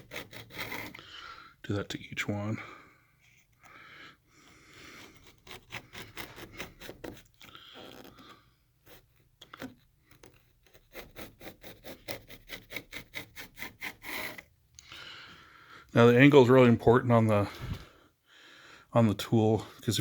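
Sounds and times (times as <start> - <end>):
putty knife scraping wood: 0.0 - 1.1, 4.4 - 14.5.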